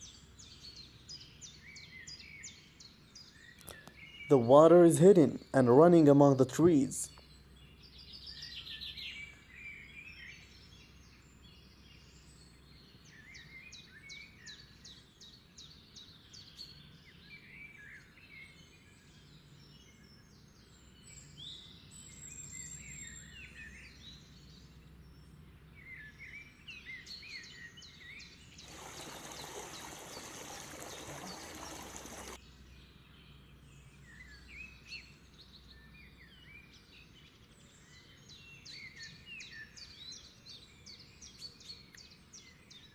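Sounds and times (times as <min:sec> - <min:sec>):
small birds chirping: 0:19.1 - 0:42.9.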